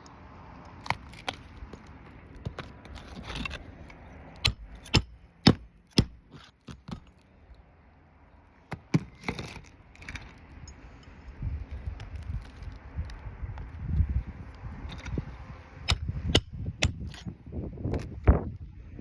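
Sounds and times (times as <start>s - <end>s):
nails being hammered: 4.4s - 6.2s.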